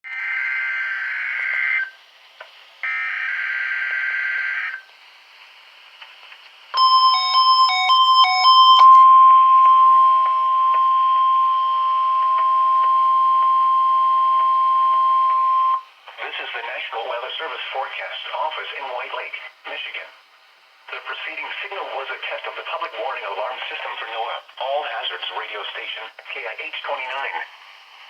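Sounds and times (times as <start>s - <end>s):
steady warning alarm tone: 6.8s - 15.8s.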